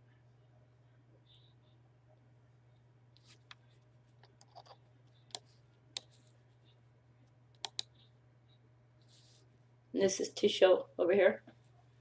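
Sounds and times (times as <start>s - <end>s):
faint low hum: 0.0s - 12.0s
computer clicks: 7.6s - 7.9s.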